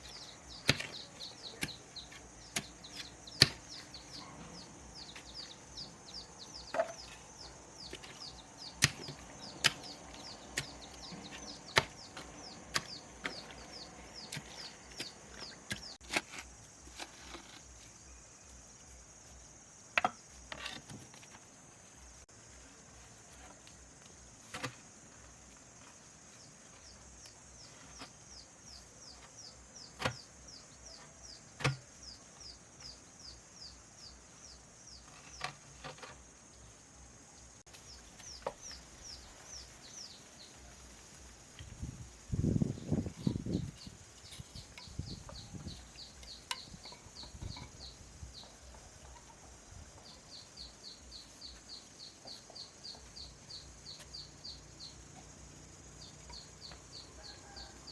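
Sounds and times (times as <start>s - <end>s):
chopping wood: 2.5s - 3.8s, 8.7s - 13.6s, 31.6s - 31.9s.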